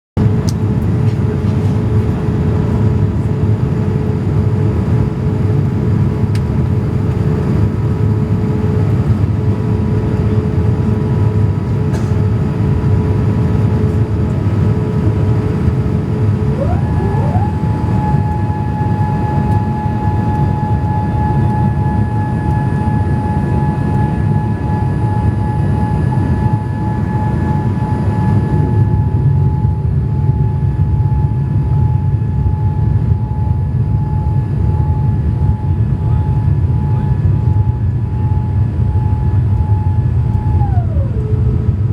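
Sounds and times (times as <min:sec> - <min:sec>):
airplane cabin roar: 0:00.2 - 0:41.9
hydraulic whine: 0:16.0 - 0:29.8, 0:36.8 - 0:41.9.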